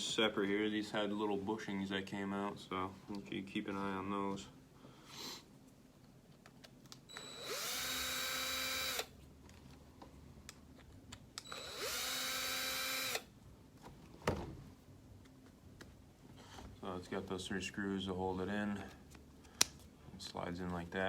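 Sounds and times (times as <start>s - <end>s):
power drill whining: 7.1s - 9.1s, 11.4s - 13.3s.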